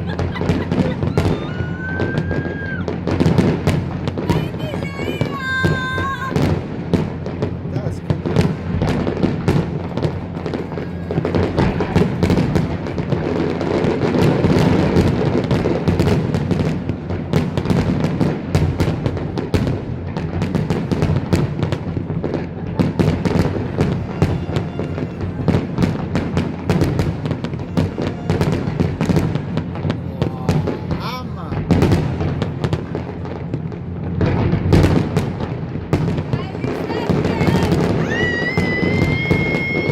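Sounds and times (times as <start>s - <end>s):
fireworks bangs and crackles: 0.0s - 39.9s
low rumble: 6.3s - 38.1s.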